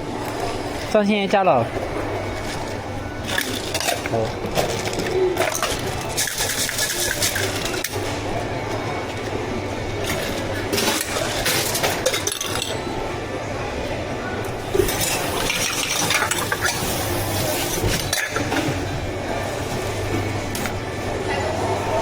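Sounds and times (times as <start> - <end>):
cups and utensils clinking: 1.7 - 8.1, 10.0 - 13.0, 14.4 - 19.0.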